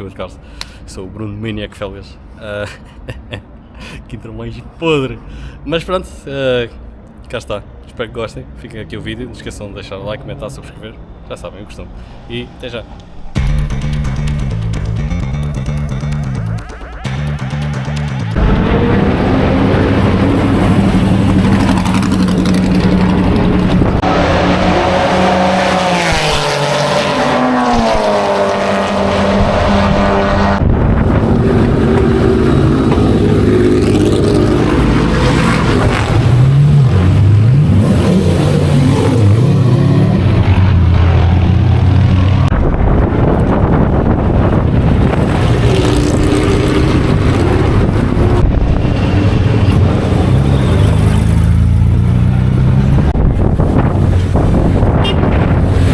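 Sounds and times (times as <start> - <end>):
racing car engines at high revs: 13.4 - 42.5, 44.8 - 55.9.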